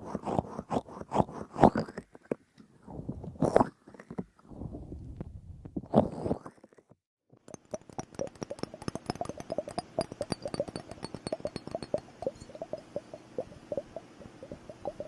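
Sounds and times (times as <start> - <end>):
liquid bubble timer gurgling: 7.4 - 15.0.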